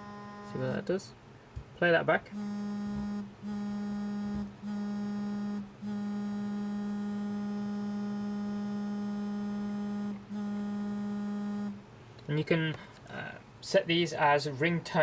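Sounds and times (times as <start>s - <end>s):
phone vibrating on a desk: 0.0s - 0.6s, 2.3s - 11.8s.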